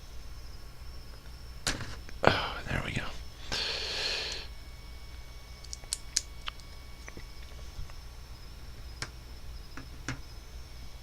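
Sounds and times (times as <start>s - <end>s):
low steady hum: 0.0s - 11.0s
plastic bricks clicking together: 5.6s - 7.2s.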